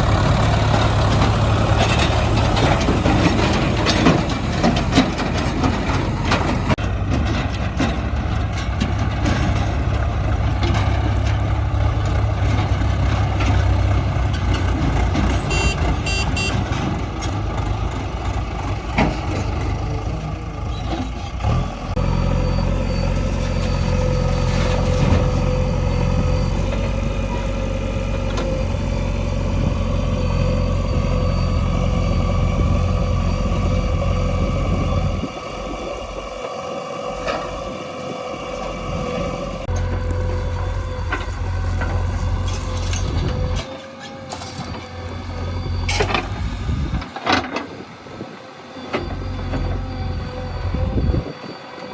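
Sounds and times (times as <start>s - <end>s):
diesel machinery running: 0.0s - 51.9s
reversing alarm beeps: 15.4s - 16.6s, 22.0s - 27.4s, 48.9s - 51.9s.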